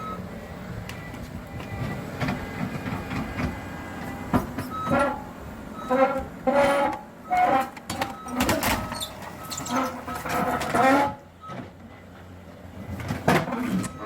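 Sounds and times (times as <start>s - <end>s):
skid steer engine running: 0.0s - 14.0s
short squeals: 5.8s - 11.2s.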